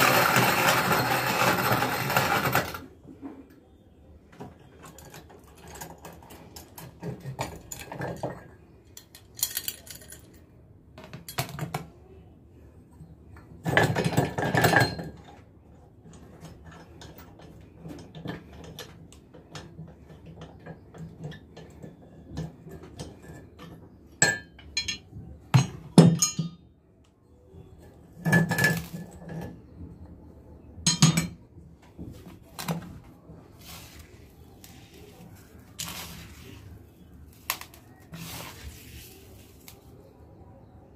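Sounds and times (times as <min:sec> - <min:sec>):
glass pieces clinking in metal jar: 0:24.2 - 0:25.0, 0:26.1 - 0:26.6.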